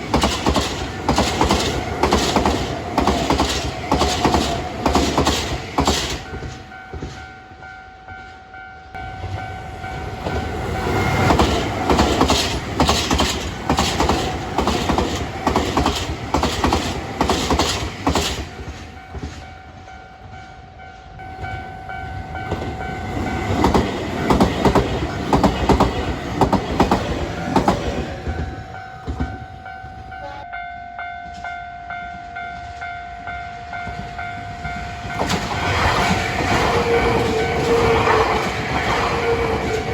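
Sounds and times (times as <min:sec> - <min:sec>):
train wheels clattering over rail joints: 0:00.0 - 0:07.3, 0:10.0 - 0:19.8, 0:22.2 - 0:30.1, 0:33.9 - 0:39.9
level crossing warning bell: 0:01.4 - 0:12.9, 0:18.6 - 0:35.3, 0:36.7 - 0:39.9.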